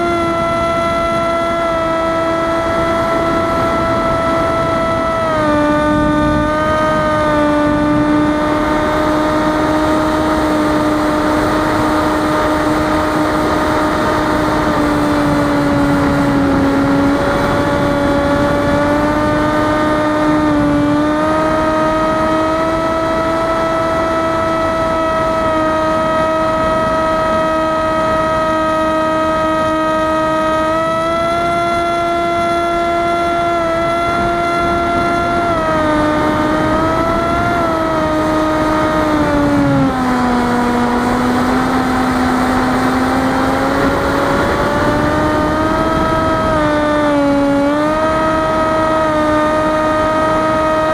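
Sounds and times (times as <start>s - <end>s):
electric motor whine: 0.0s - 50.9s.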